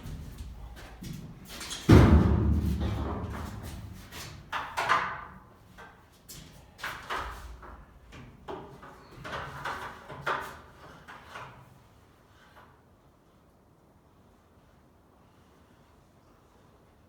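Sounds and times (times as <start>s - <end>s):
knocks and scraping clatters: 0.0s - 12.7s.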